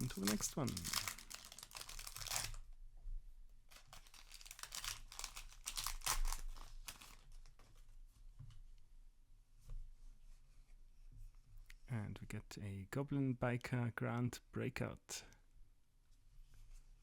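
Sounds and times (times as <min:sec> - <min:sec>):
foil wrapper tearing and crinkling: 0:00.0 - 0:02.6, 0:03.7 - 0:07.4.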